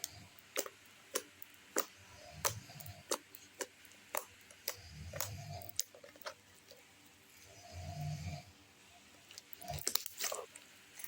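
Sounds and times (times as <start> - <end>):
slime clicking and popping: 0.0 - 6.4, 9.6 - 10.4.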